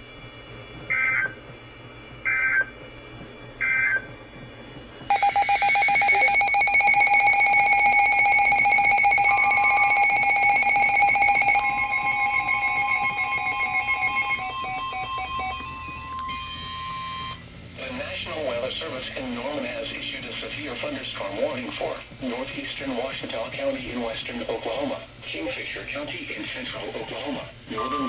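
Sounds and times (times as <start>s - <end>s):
screeching digital data bursts: 5.1s - 17.2s
steady two-tone alert tone: 5.1s - 17.4s, 27.7s - 28.0s.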